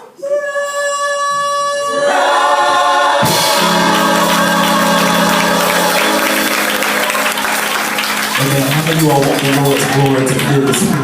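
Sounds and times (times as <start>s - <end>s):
choir singing a held chord: 1.8s - 8.0s.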